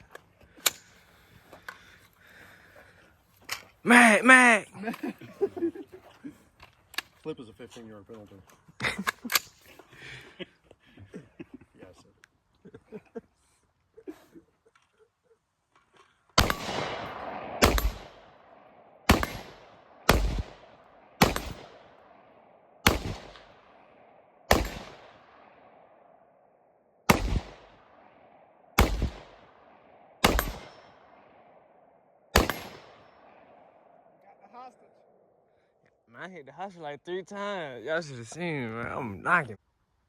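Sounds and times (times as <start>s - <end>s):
gunshots: 16.4s - 26.0s, 27.0s - 31.6s, 32.3s - 34.0s.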